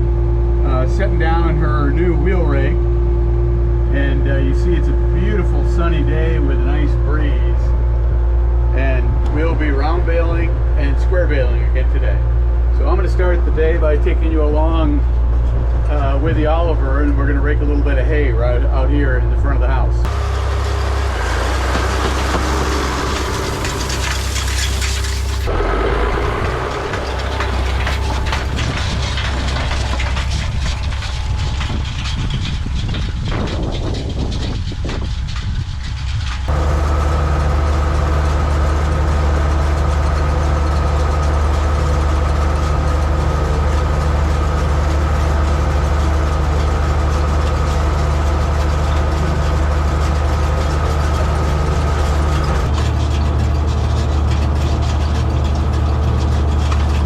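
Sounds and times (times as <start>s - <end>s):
tractor engine running: 0.0s - 57.0s
rattling and clicking: 20.0s - 57.0s.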